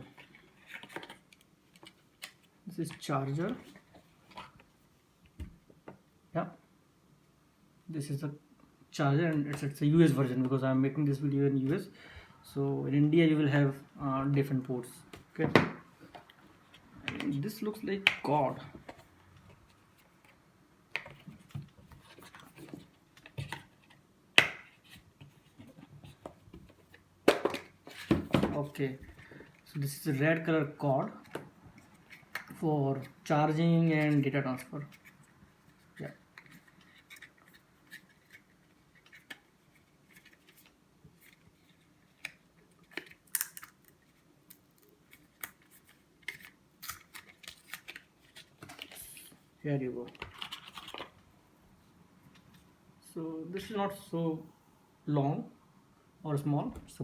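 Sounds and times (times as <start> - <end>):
cable and packaging crinkling: 34.8 - 49.4, 50.0 - 51.3.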